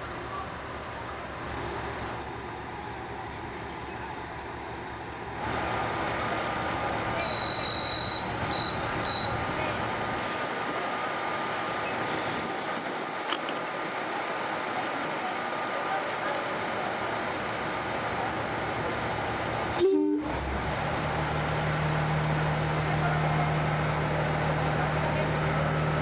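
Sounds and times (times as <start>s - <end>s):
diesel railcar rumbling past: 0.0s - 26.0s
high beeps: 7.2s - 9.4s.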